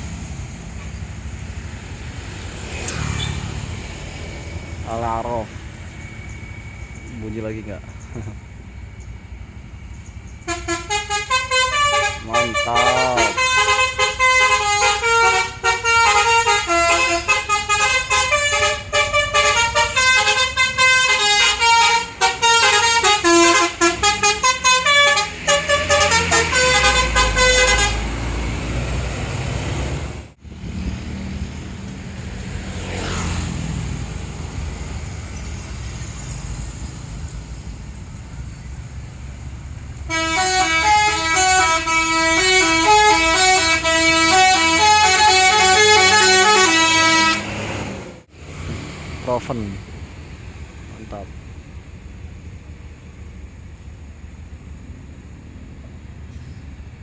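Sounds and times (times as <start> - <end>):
bus engine running: 0.0 - 57.0
bus musical horns playing a tune: 10.5 - 28.6, 40.1 - 48.2.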